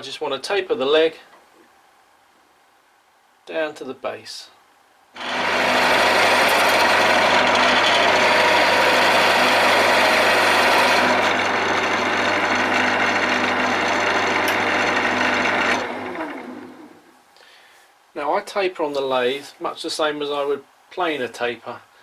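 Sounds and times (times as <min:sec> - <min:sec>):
chisel cutting spinning wood: 0:05.2 - 0:17.0
wood lathe motor hum: 0:05.2 - 0:17.0.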